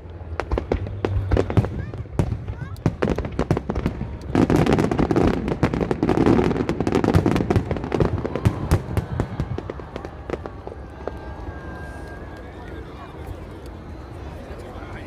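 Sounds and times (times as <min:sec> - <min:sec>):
fireworks crackling bangs: 0:00.1 - 0:12.0.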